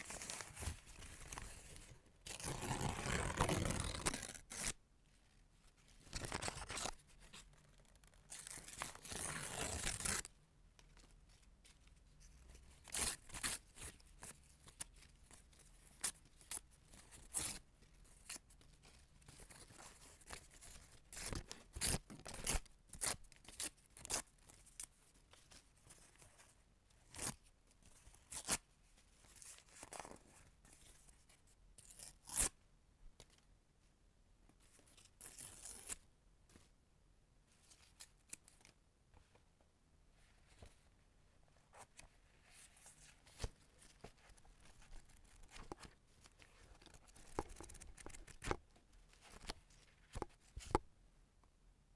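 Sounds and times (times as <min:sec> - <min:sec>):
paper ripping: 0:02.3 - 0:04.8.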